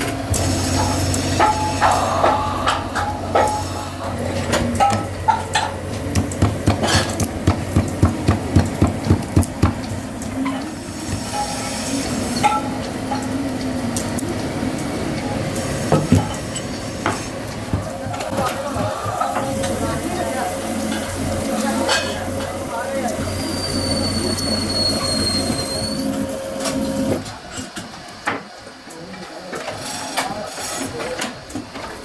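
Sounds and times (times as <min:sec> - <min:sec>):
steady low hum: 0:00.0 - 0:08.4.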